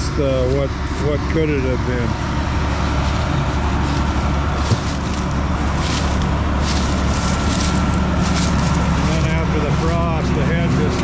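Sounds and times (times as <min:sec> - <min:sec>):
combine harvester engine hum: 0:00.0 - 0:11.0
machinery noise: 0:00.0 - 0:11.0.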